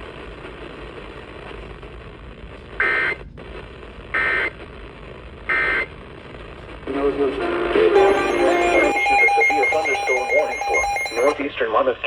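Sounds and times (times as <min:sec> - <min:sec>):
buzzy digital data tone bursts: 0:08.0 - 0:11.4.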